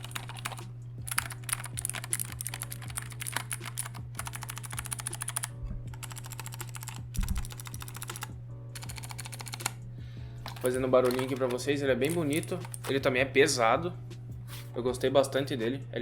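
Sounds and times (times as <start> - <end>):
clicky keyboard typing: 0.0 - 9.8, 10.5 - 13.0
low hum: 5.5 - 6.0.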